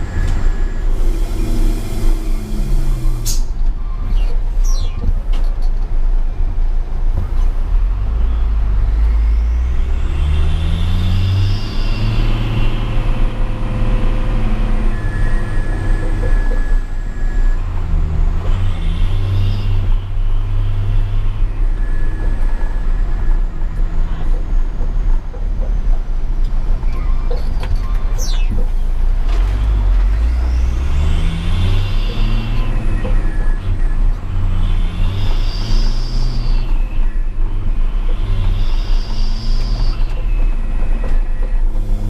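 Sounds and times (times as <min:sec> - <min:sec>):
truck diesel engine revving: 0:00.0 - 0:03.6, 0:07.9 - 0:24.2, 0:28.6 - 0:42.0
faint high whistle: 0:31.6 - 0:37.6, 0:38.4 - 0:41.6.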